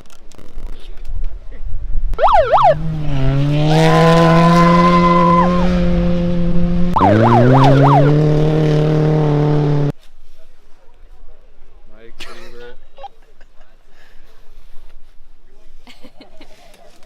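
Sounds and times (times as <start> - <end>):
car engine revving: 2.2 - 9.9.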